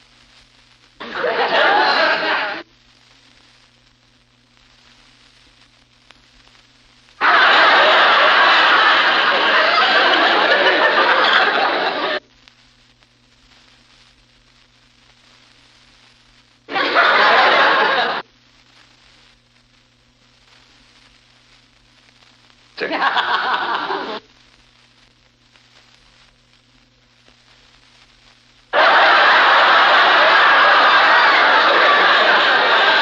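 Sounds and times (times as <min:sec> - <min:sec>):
low hum and hiss: 0:00.0 - 0:33.0
studio audience laughter: 0:01.0 - 0:02.6, 0:07.2 - 0:12.2, 0:16.7 - 0:18.2, 0:22.8 - 0:24.2, 0:28.7 - 0:33.0.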